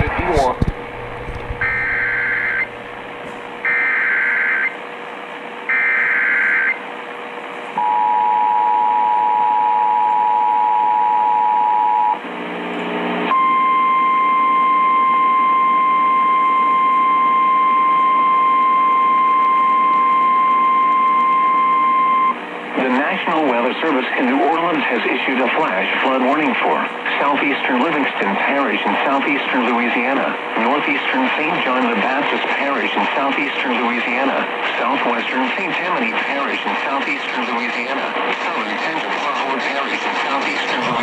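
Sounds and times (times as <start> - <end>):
radio static: 0.0 - 4.8, 22.8 - 41.0
faint steady hum: 0.0 - 41.0.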